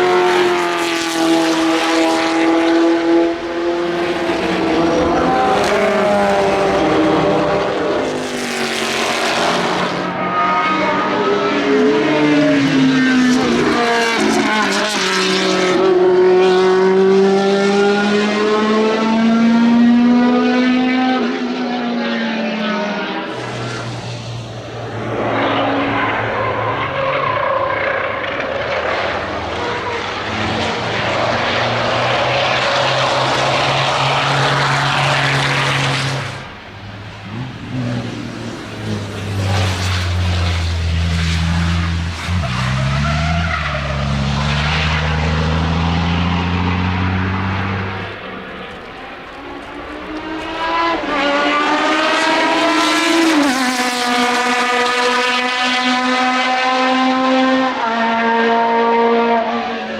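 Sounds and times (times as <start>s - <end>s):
car engine revving through gear change: 0.0s - 23.8s, 37.2s - 59.8s
racing cars passing at speed: 0.0s - 59.9s.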